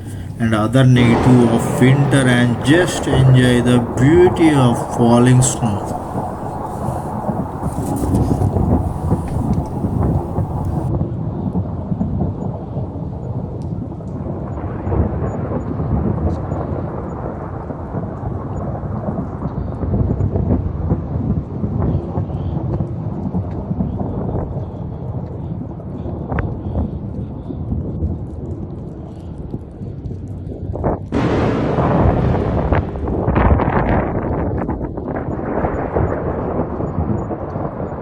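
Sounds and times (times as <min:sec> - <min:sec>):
wind buffeting microphone: 0:00.0 - 0:10.9.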